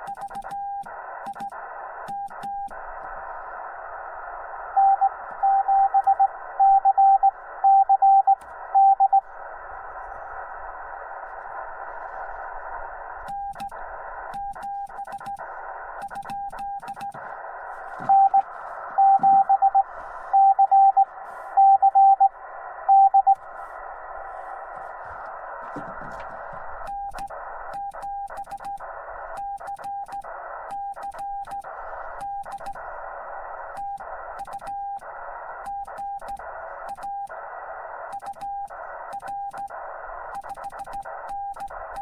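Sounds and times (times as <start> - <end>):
radio band noise hiss: 0.0 - 42.0
morse code beeps: 4.8 - 9.2, 18.0 - 23.4
sharp clicks: 13.2 - 17.2, 27.1 - 32.8, 33.8 - 34.8, 39.1 - 39.7.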